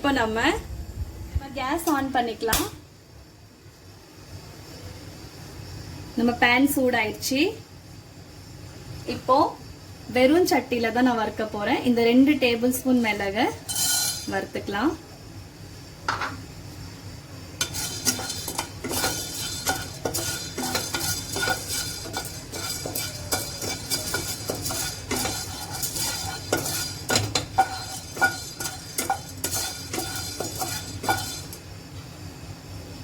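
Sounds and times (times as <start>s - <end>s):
peppercorns scraping in a pan: 12.4s - 14.8s, 17.6s - 31.7s.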